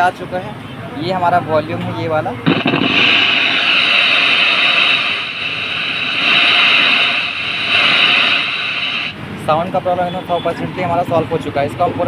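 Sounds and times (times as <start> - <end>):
speaker hiss: 2.4 - 10.0.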